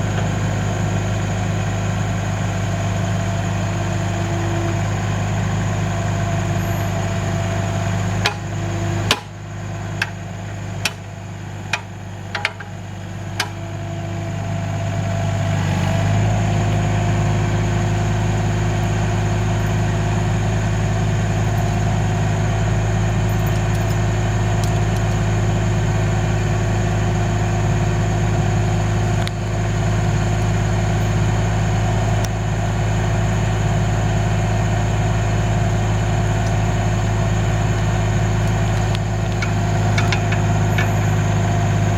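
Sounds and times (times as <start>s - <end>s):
engine humming: 0.0s - 41.9s
sharp knocks: 8.2s - 9.3s.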